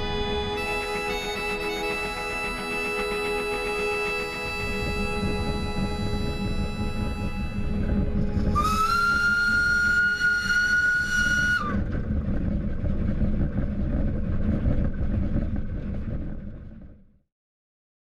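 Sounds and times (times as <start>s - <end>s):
steam locomotive whistle: 0.0s - 11.8s
train rumble: 4.3s - 16.4s.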